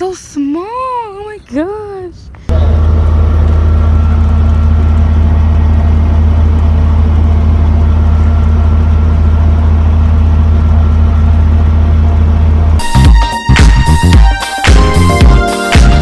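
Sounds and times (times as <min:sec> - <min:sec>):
helicopter engine and rotor drone: 0:02.5 - 0:12.8.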